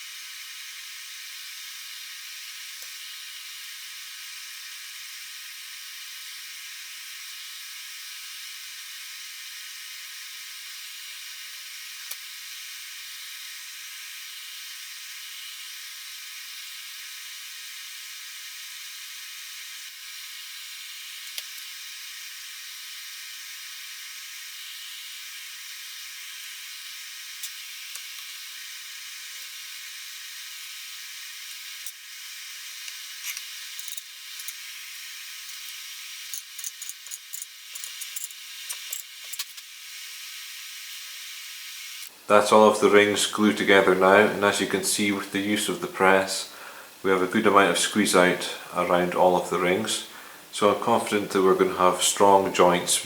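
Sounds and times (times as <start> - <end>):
steady hiss: 41.6 - 53.0.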